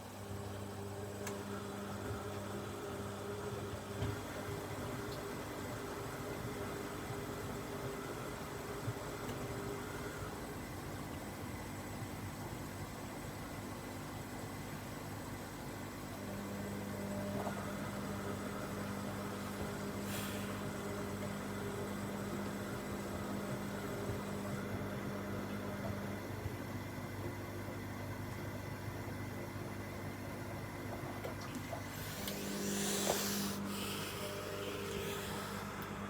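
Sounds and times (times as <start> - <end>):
washing machine drum motor humming: 14.4 - 36.0.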